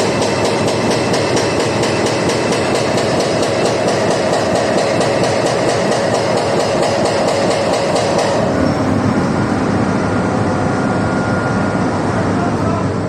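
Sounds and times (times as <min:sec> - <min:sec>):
hydraulic breaker hammer pounding: 0:00.0 - 0:08.6
diesel engine running: 0:00.0 - 0:13.0.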